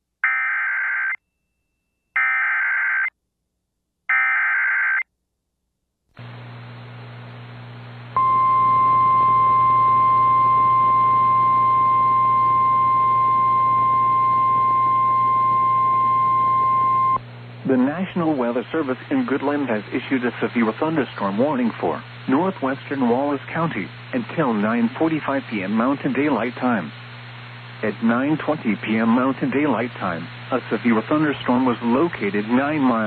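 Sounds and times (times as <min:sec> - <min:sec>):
radio static with low hum: 0:06.2 - 0:33.0
steady warning alarm tone: 0:08.2 - 0:17.2.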